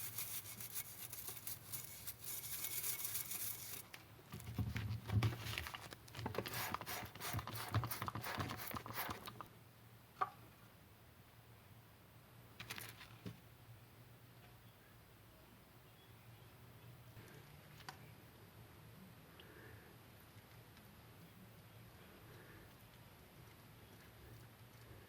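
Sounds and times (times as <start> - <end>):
tool scraping and rubbing: 0.0 - 3.9, 6.4 - 9.4.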